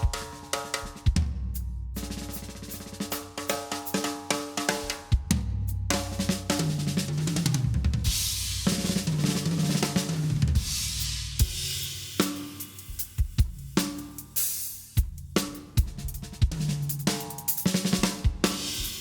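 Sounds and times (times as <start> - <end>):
hi-hat beat: 0.0 - 4.0, 10.8 - 19.0
acoustic drum kit playing: 0.0 - 19.0.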